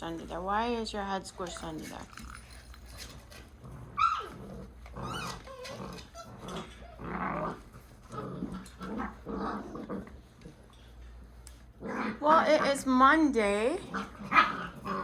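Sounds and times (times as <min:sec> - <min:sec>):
puppies growling: 0:01.3 - 0:15.0
puppy yipping: 0:04.0 - 0:04.4, 0:05.0 - 0:07.1.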